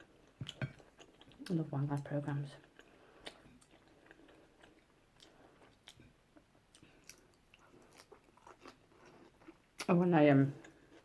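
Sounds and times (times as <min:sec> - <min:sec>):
person chewing food: 0:00.0 - 0:02.0, 0:02.6 - 0:09.9, 0:10.6 - 0:11.0.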